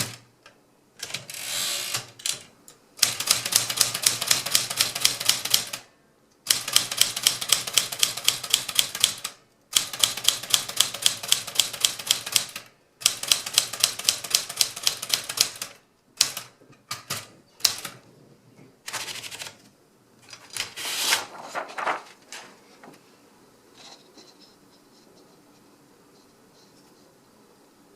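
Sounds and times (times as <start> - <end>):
typewriter rasping: 3.0 - 5.8, 18.9 - 19.6.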